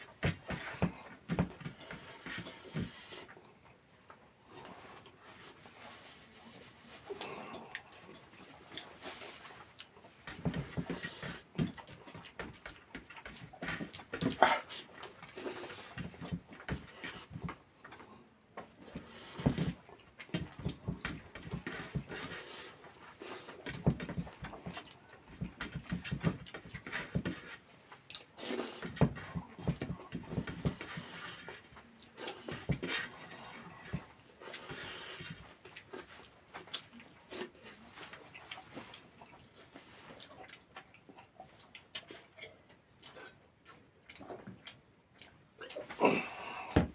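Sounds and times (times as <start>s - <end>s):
chewing and mouth smacks: 7.1s - 17.2s, 31.0s - 46.0s.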